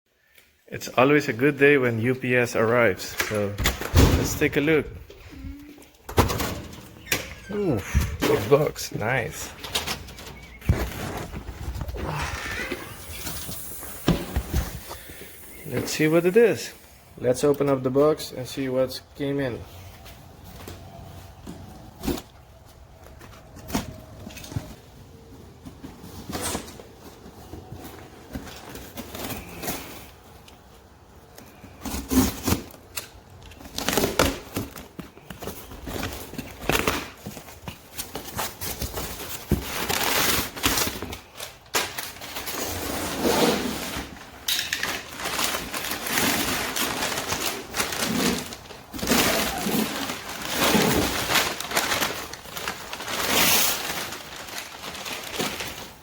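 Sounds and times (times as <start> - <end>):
cardboard box tearing and crinkling: 45.1 - 56.0.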